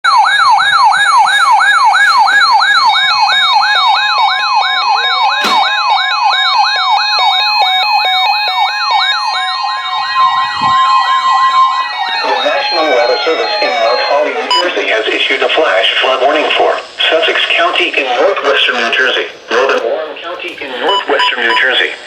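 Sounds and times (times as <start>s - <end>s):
second siren rising in pitch: 0.0s - 14.7s
electronic siren yelping: 0.0s - 14.8s
steady high tone: 0.1s - 19.7s
sharp knock: 5.4s - 5.7s.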